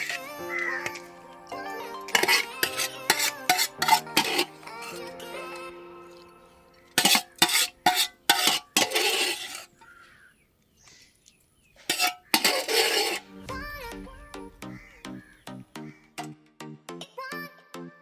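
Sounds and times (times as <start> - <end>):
spoon scraping a pan: 0.0 - 1.1, 2.0 - 5.0, 6.9 - 10.0, 11.8 - 13.4
music: 0.0 - 8.0, 13.0 - 18.0.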